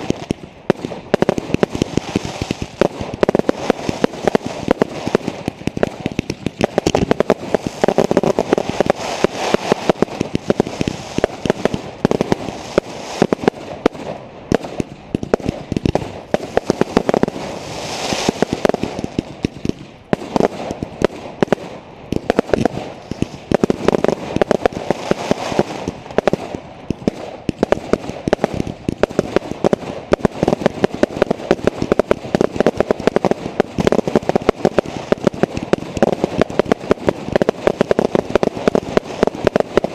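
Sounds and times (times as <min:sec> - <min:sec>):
fireworks bangs and crackling: 0:00.0 - 0:39.9.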